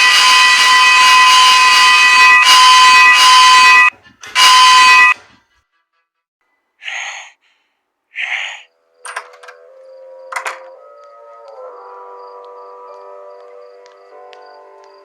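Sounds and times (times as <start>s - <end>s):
harsh buzzing alarm: 0.0s - 5.2s.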